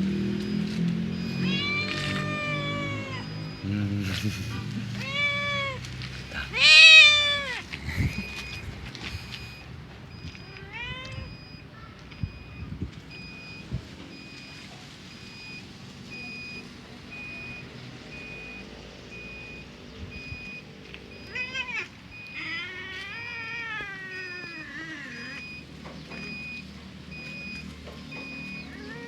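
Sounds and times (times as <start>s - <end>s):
cat meowing: 1.2s - 3.6s, 4.9s - 7.7s, 10.2s - 12.0s, 20.3s - 26.6s, 28.3s - 29.0s
electronic beep: 12.2s - 13.6s.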